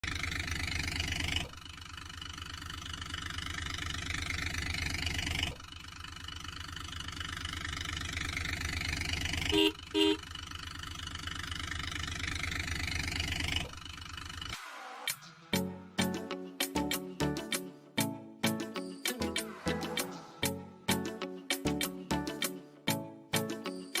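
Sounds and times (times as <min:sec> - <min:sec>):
vehicle engine revving: 0:00.0 - 0:15.7
short horn honks: 0:09.5 - 0:10.3.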